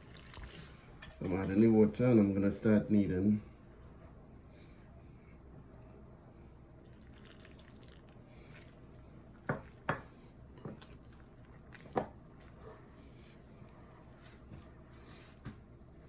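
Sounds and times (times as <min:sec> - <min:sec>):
water trickling into flour: 0:00.0 - 0:00.7, 0:06.8 - 0:10.0.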